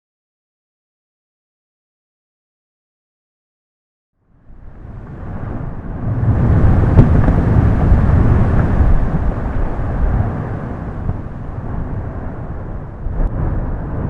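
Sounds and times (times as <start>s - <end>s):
volcano rumbling: 4.3s - 14.0s.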